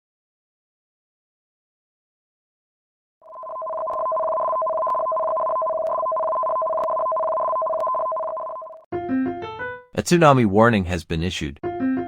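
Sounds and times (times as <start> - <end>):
two-tone electronic alert: 3.3 - 8.8.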